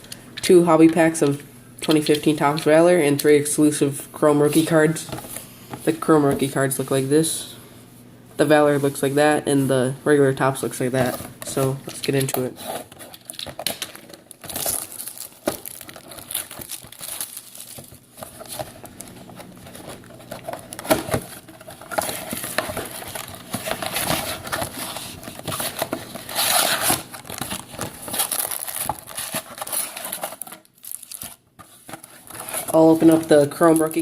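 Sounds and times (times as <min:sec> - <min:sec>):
packaging crinkling and tearing: 0:11.9 - 0:34.0.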